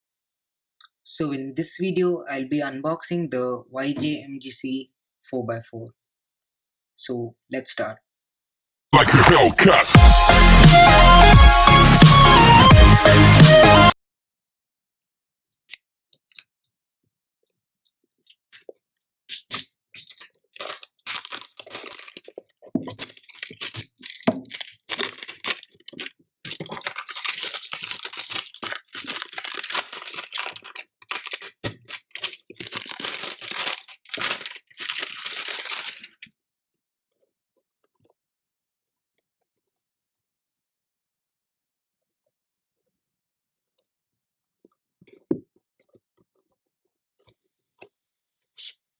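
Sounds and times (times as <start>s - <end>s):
packaging tearing and crinkling: 19.4s - 36.3s.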